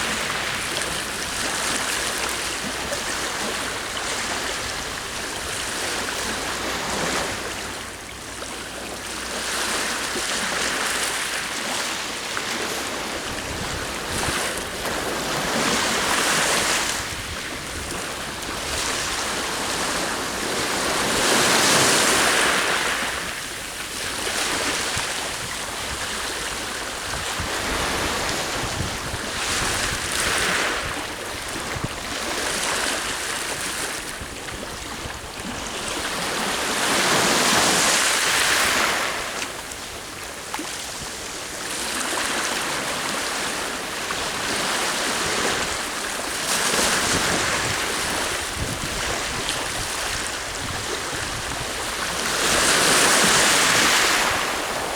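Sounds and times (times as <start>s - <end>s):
sea waves breaking on shore: 0.0s - 54.9s
wind buffeting microphone: 12.9s - 37.8s, 46.7s - 54.9s.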